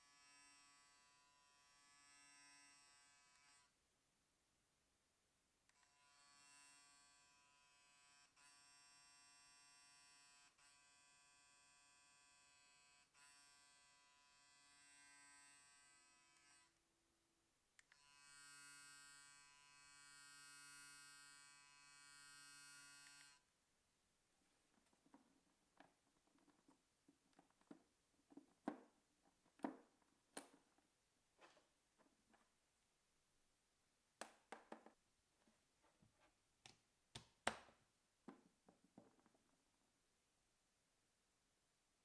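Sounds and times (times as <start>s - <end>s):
electric toothbrush humming: 0.0s - 3.8s, 5.7s - 16.8s, 17.9s - 23.5s.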